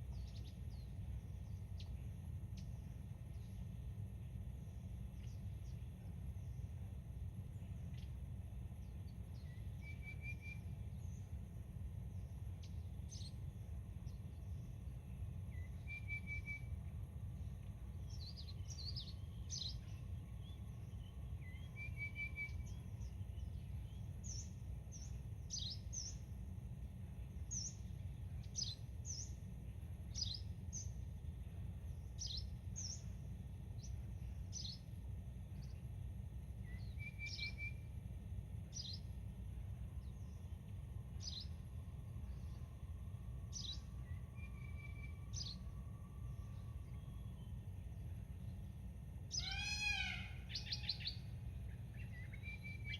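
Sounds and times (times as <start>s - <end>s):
steady low rumble: 0.0s - 9.8s, 10.6s - 15.9s, 16.6s - 21.9s, 22.5s - 52.6s
bird chirping: 12.6s - 16.8s, 17.5s - 26.3s, 27.4s - 29.4s, 30.1s - 31.0s, 31.9s - 33.2s, 33.8s - 34.9s, 36.6s - 37.9s, 38.7s - 39.1s, 40.0s - 41.6s, 43.5s - 47.6s, 49.3s - 52.9s
bird trilling: 49.3s - 51.2s.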